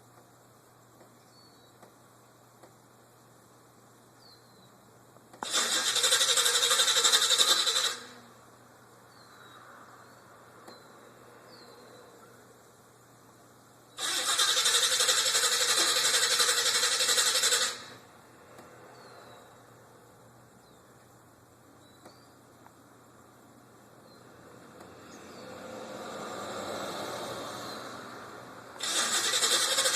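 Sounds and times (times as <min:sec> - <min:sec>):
engine cranking on starter: 0:05.4 - 0:08.2, 0:14.0 - 0:18.0, 0:28.8 - 0:29.9.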